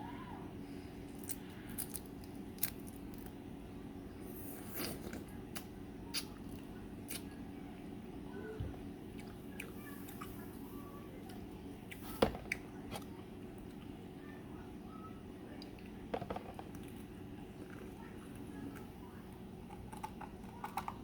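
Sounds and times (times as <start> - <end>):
soft chewing: 0.6 - 3.4, 4.0 - 21.0.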